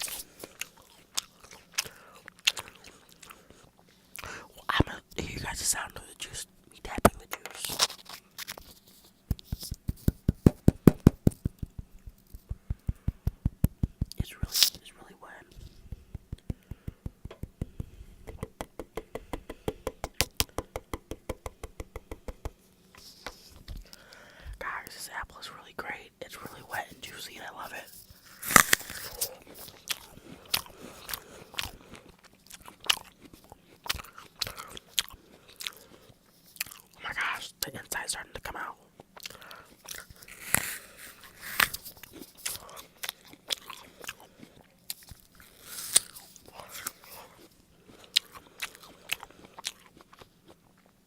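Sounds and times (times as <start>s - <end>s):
fingertips tapping on apple flesh: 9.2s - 14.2s, 15.6s - 22.6s
apple crunching: 26.4s - 36.9s, 39.2s - 50.9s.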